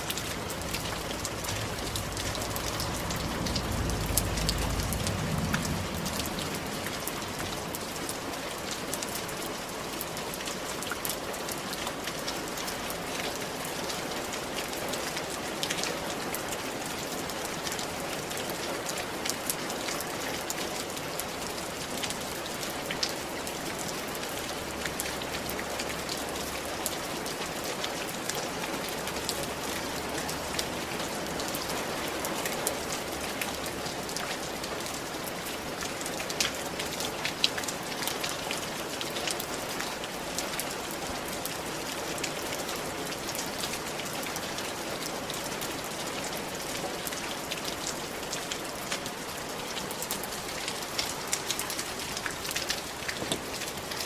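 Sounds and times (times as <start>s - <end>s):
rain on roof tiles: 0.0s - 54.0s
low rumble: 0.2s - 7.7s.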